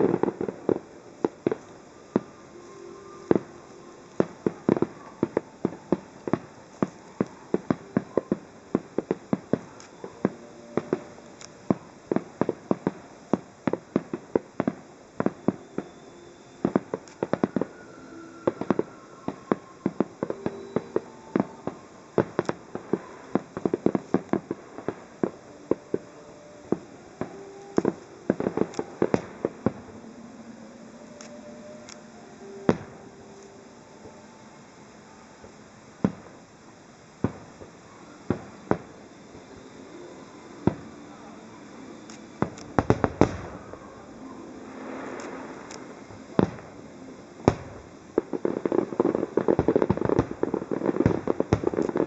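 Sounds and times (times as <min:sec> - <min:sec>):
firework shells bursting: 0:00.0 - 0:30.2, 0:41.9 - 0:44.1, 0:44.7 - 0:52.0.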